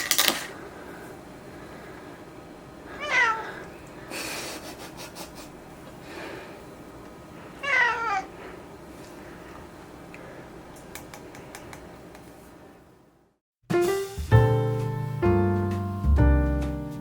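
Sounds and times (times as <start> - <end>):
cat meowing: 2.9 - 3.7, 7.6 - 8.3.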